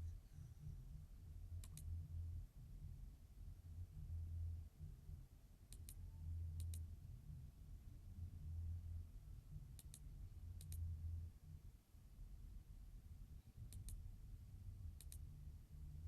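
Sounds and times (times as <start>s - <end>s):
low hum: 0.0s - 16.0s
faint computer mouse clicks: 1.6s - 1.9s, 5.7s - 6.0s, 6.6s - 6.9s, 9.8s - 10.9s, 13.7s - 14.0s, 15.0s - 15.3s.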